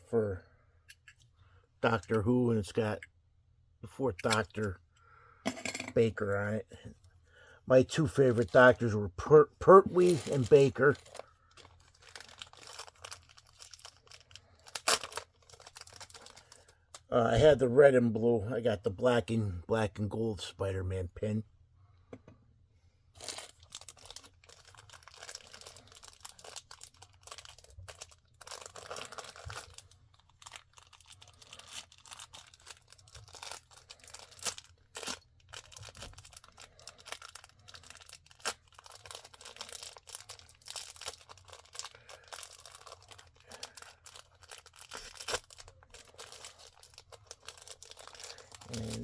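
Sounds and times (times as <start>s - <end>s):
packaging crinkling and tearing: 9.6s - 16.8s, 23.2s - 49.0s.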